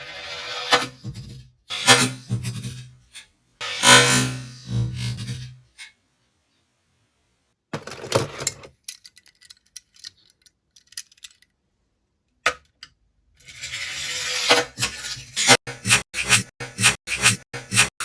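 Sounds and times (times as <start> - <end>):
toy car rattling: 8.1 - 11.5
toy car rolling scrape: 13.4 - 17.9.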